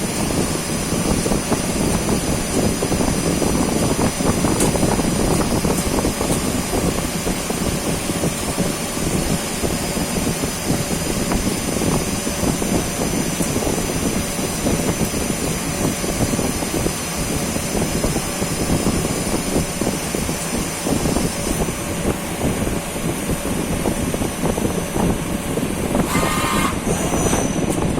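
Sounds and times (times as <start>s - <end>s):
lathe running: 0.0s - 27.9s
thin high whine: 18.8s - 27.9s.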